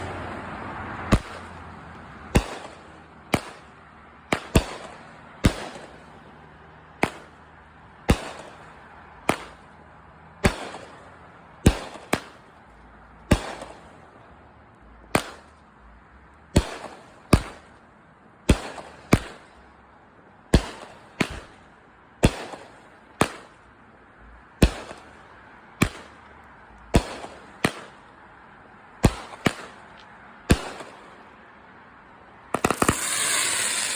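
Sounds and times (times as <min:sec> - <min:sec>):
firework cake sharp bangs: 0:01.1 - 0:01.5, 0:02.3 - 0:06.2, 0:07.0 - 0:07.4, 0:08.0 - 0:09.7, 0:10.4 - 0:11.0, 0:11.6 - 0:12.5, 0:13.3 - 0:14.0, 0:15.1 - 0:15.6, 0:16.5 - 0:17.8, 0:18.4 - 0:19.6, 0:20.5 - 0:21.6, 0:22.2 - 0:23.6, 0:24.6 - 0:25.2, 0:25.8 - 0:26.3, 0:26.9 - 0:28.1, 0:29.0 - 0:31.2, 0:32.5 - 0:33.9.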